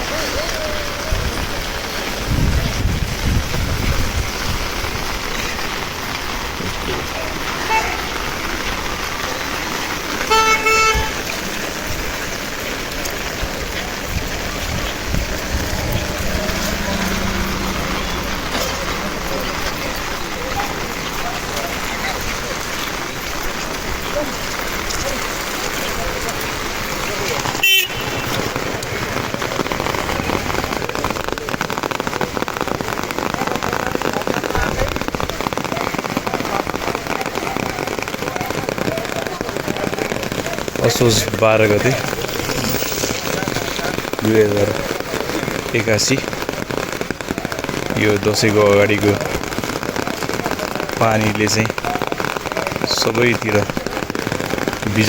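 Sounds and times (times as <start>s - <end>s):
heavy rain hissing: 0.0s - 55.0s
vehicle horn tooting: 7.6s - 8.1s, 10.3s - 11.3s, 27.6s - 28.4s.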